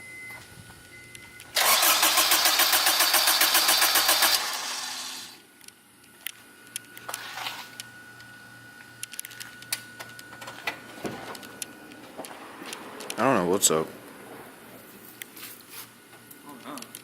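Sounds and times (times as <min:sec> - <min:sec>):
engine cranking by starter: 0:01.6 - 0:05.4.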